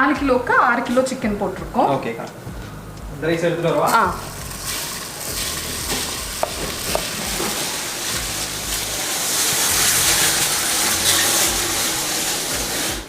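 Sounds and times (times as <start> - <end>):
water boiling and bubbling: 3.8 - 13.0.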